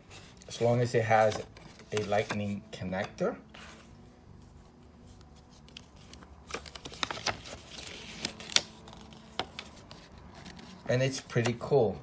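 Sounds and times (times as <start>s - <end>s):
packaging rustling: 5.2s - 11.5s.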